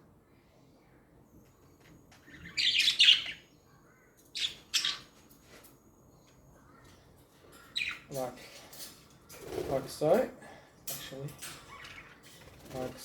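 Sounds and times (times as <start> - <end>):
budgerigars chirping: 2.3 - 3.5, 4.4 - 5.1, 7.8 - 8.2.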